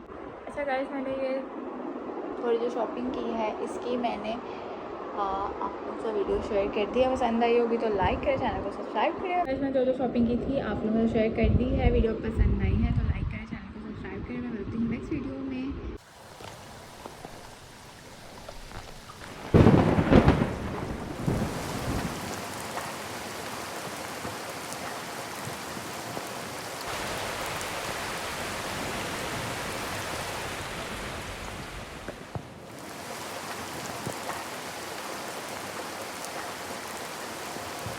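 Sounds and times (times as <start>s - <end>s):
steady rain falling: 16.0s - 37.9s
thunder rumble: 16.6s - 37.9s
thunder clap: 19.2s - 24.7s.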